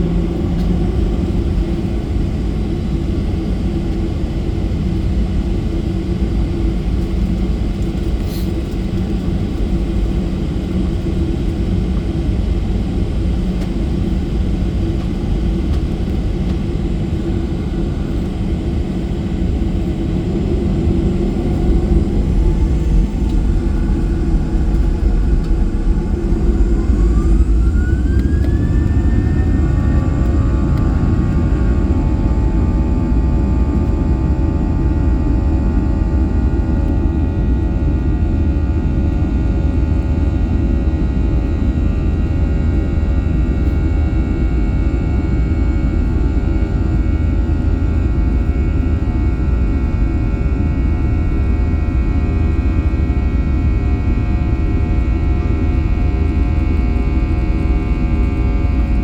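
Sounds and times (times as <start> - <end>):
jet engines spooling up: 13.1 - 35.5.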